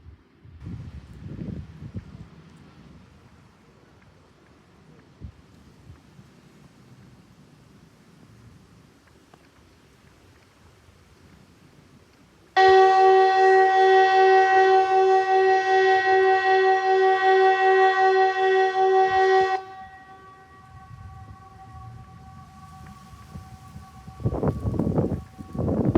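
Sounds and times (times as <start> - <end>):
electronic siren two-note chord: 12.6 - 25.9.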